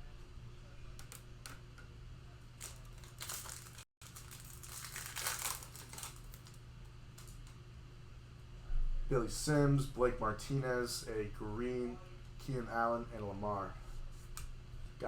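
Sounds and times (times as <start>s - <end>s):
wrapper crinkling and tearing: 2.6s - 6.6s, 7.2s - 7.5s.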